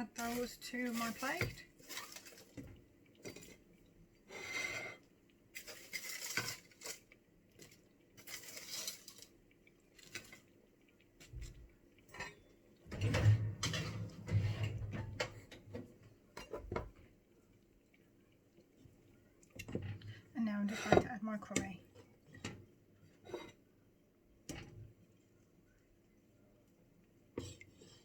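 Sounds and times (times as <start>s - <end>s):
metal utensil scraping on tray: 0.1s - 2.6s, 5.6s - 7.0s, 8.2s - 9.3s, 12.9s - 15.4s, 20.6s - 21.2s.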